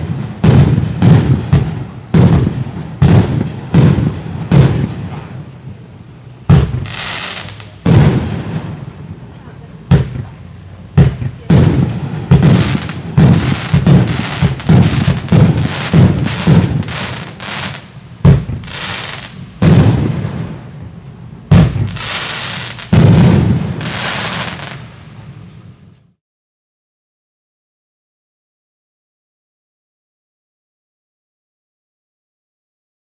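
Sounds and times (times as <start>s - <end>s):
firework bangs: 0.0s - 26.0s
crackling hiss: 0.0s - 26.2s.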